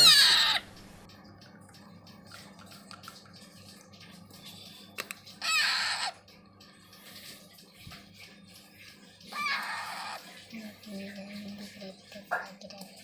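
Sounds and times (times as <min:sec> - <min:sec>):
parrot squawking harshly: 0:00.0 - 0:00.7, 0:05.4 - 0:06.2, 0:09.3 - 0:10.2.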